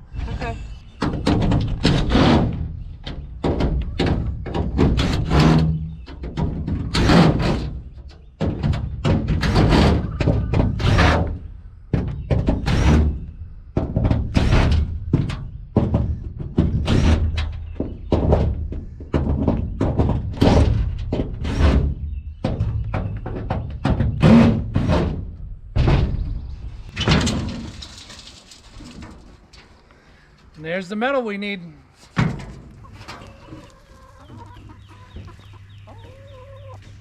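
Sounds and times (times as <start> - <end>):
hard thunks and knocks: 8.4 - 27.6.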